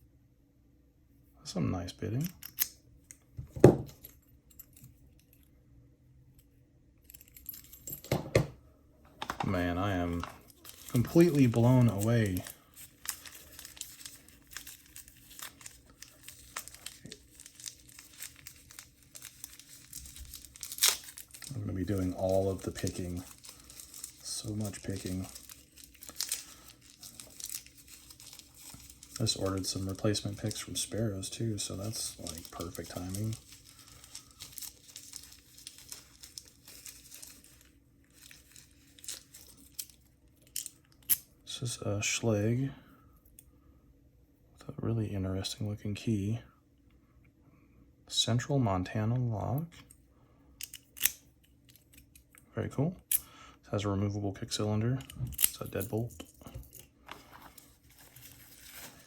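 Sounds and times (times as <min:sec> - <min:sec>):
packaging crinkling: 0:09.6 - 0:40.7, 0:55.3 - 0:59.0.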